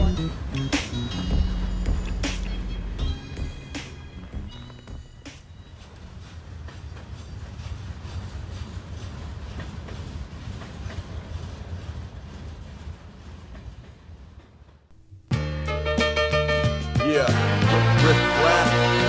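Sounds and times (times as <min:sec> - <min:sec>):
train wheels clanking: 0:00.0 - 0:14.9
freight train rumbling: 0:00.0 - 0:19.0.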